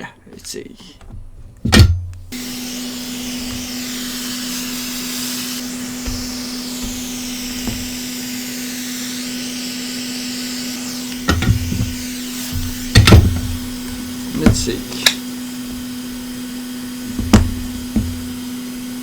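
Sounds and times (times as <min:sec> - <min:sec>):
heat gun fan blowing: 0:01.0 - 0:19.0
light knocks: 0:17.1 - 0:18.3.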